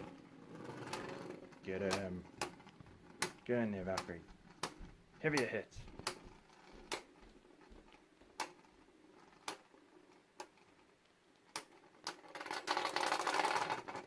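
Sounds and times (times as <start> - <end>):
spinning tops clacking: 0.0 - 7.2, 11.4 - 14.0
faint whirr: 0.0 - 14.0
tops rattling and scraping: 0.0 - 14.0.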